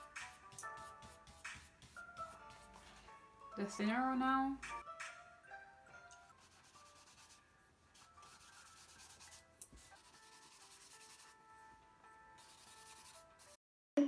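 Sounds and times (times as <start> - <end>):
quiet music: 0.0 - 13.6
paintbrush scrubbing on paper: 0.8 - 3.0, 6.4 - 7.4, 8.0 - 11.4, 12.4 - 13.6.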